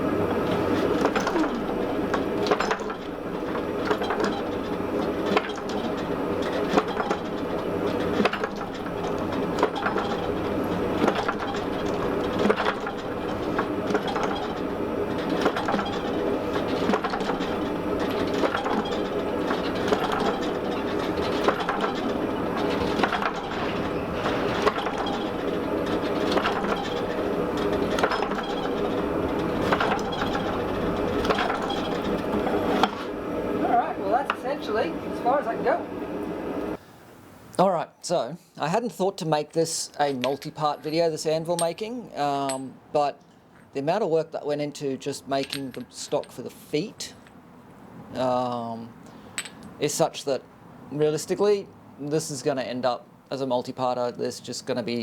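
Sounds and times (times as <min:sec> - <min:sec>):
gas forge burner roaring: 0:00.0 - 0:37.1.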